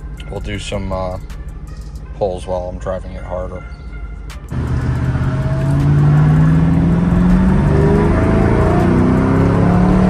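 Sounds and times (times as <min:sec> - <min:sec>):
car engine revving under full throttle: 0:04.5 - 0:10.0.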